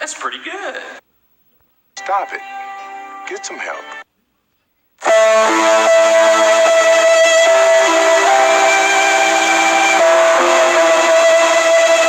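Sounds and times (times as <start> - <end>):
distorted electric guitar: 5.0 - 12.0.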